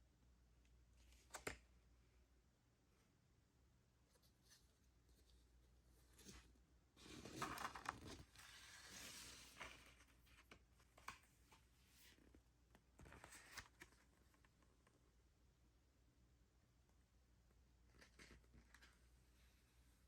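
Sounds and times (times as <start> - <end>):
record sleeve rustling: 6.2 - 14.6.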